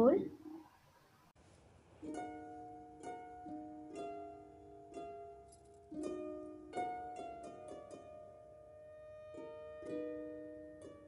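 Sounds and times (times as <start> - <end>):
plucked harp-like music: 2.0 - 11.0.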